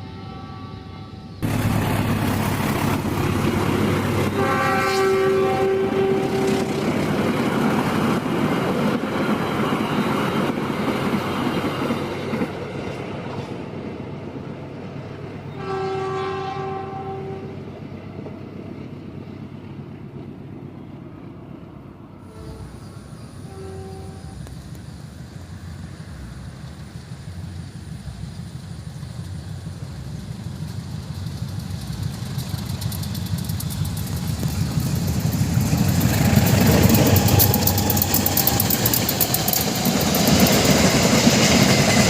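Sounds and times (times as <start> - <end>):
train horn blasts: 0.0 - 1.4, 4.2 - 6.8, 15.5 - 17.6, 22.2 - 24.6
train passing at speed: 0.0 - 42.0.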